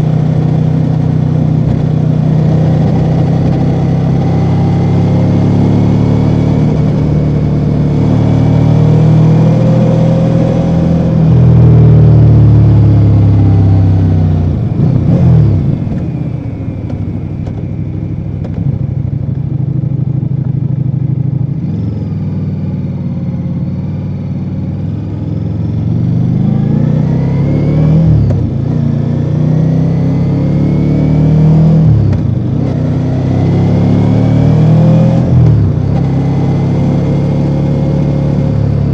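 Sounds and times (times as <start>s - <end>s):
motorcycle engine accelerating: 0.0s - 38.9s.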